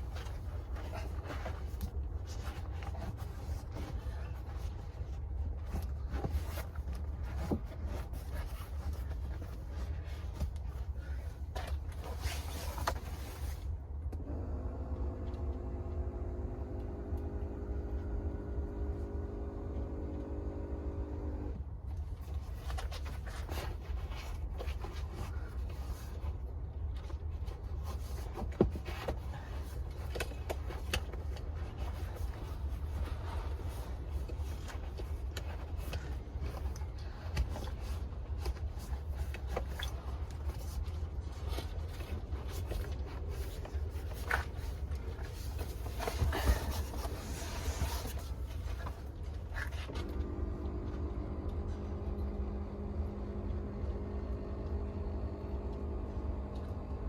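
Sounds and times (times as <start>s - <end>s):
rustling and scraping leather: 0.0s - 20.4s, 21.4s - 52.9s.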